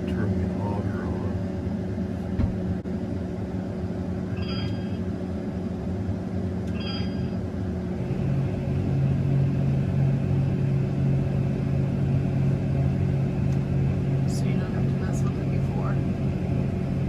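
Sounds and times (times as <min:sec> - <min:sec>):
combine harvester drone: 0:00.0 - 0:17.0
short electronic beeps: 0:04.3 - 0:05.0, 0:06.7 - 0:07.4.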